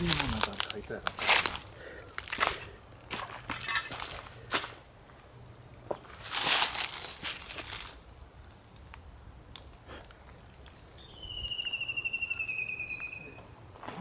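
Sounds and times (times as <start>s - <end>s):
songbird trilling: 11.0s - 13.6s.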